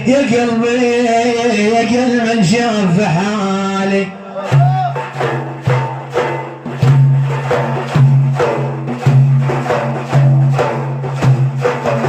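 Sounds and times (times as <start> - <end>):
percussion strikes: 4.3 - 12.0.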